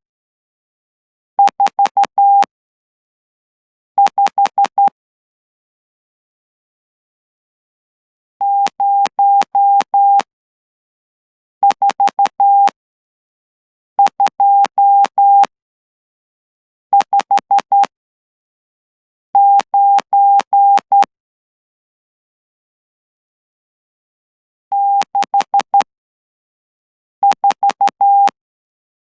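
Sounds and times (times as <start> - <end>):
morse code sidetone beeps: 1.4 - 2.5, 8.4 - 10.3, 11.7 - 12.8, 14.0 - 15.5, 17.0 - 17.9, 19.4 - 21.1, 24.8 - 25.9, 27.2 - 28.4.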